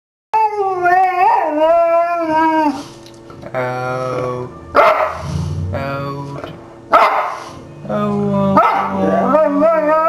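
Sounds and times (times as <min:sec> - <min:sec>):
dog howling: 0:00.4 - 0:02.9, 0:08.4 - 0:10.0.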